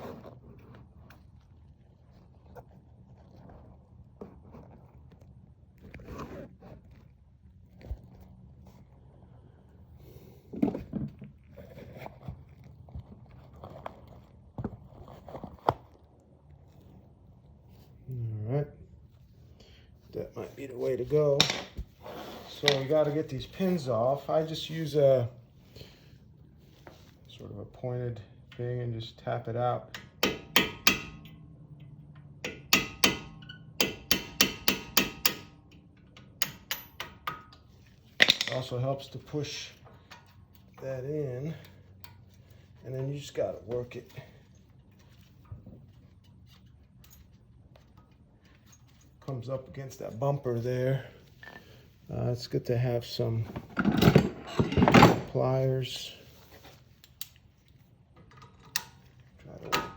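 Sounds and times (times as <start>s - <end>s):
hammer tapping metal punch: 30.0s - 31.4s, 32.4s - 37.5s.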